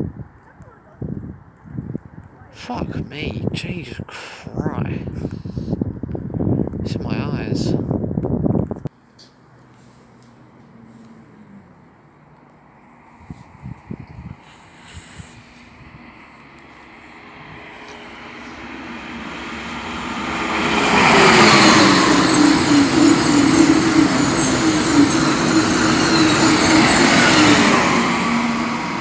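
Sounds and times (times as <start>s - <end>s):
high-speed train passing: 6.0s - 29.0s.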